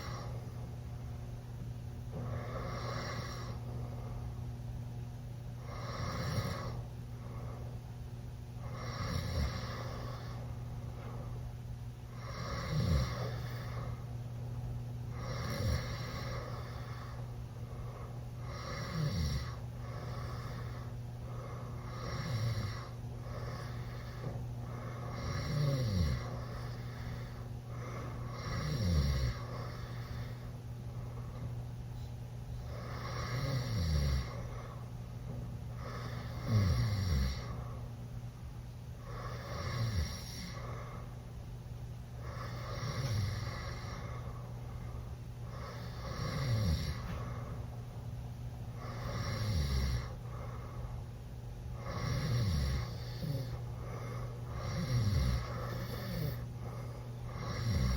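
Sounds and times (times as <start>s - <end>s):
boy snoring: 0.0s - 0.4s, 2.3s - 3.6s, 5.6s - 6.8s, 8.6s - 10.4s, 12.2s - 14.0s, 15.2s - 17.2s, 18.4s - 20.9s, 21.8s - 30.4s, 32.7s - 34.5s, 35.8s - 37.6s, 39.0s - 40.7s, 42.2s - 44.2s, 45.5s - 47.2s, 48.8s - 50.2s, 51.8s - 56.5s, 57.3s - 57.9s
steady low hum: 0.0s - 57.9s.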